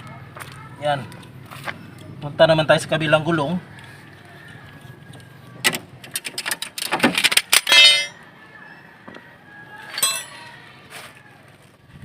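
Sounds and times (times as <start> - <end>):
metal tools clinking and clattering: 6.0 - 8.2, 9.9 - 10.7
ringing metallic clink: 7.5 - 8.2, 9.9 - 10.6.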